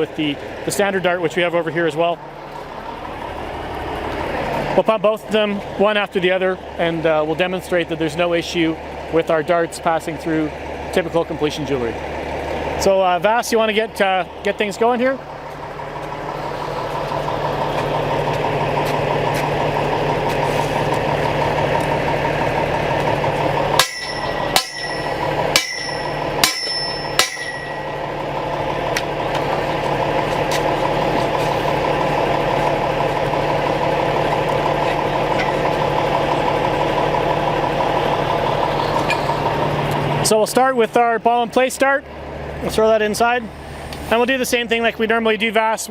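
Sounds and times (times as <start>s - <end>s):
truck engine running: 0.0s - 45.9s
sharp metallic strikes ringing: 23.7s - 28.2s.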